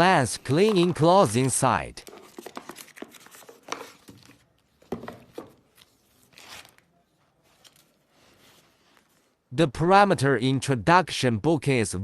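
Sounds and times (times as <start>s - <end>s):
packaging and paper rustling: 0.4s - 9.2s.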